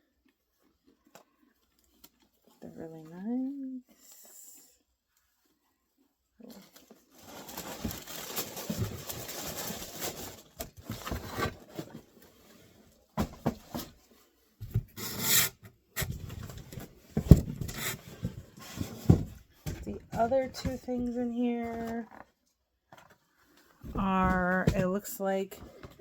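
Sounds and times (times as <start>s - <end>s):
loud crinkle: 6.4s - 12.4s
packaging rustling in cardboard box: 6.4s - 15.2s.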